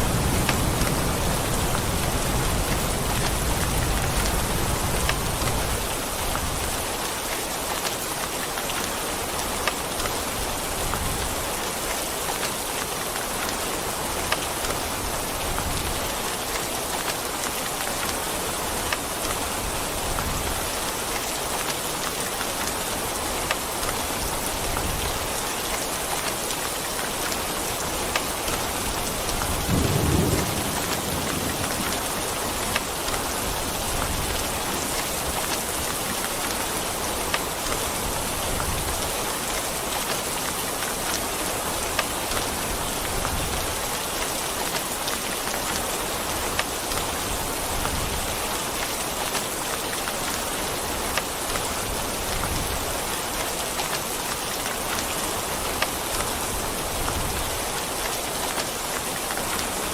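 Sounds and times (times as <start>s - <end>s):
steady rain: 0.0s - 59.9s
thunder rolling: 29.6s - 32.8s.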